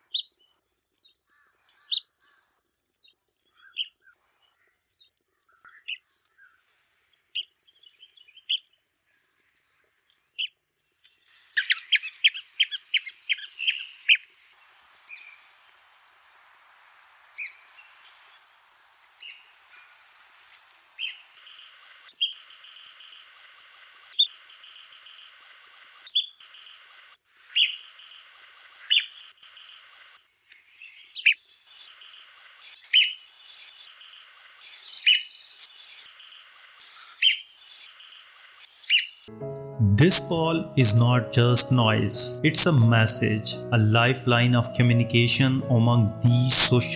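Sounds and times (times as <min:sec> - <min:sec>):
steady high hiss: 0:39.4 - 0:46.9.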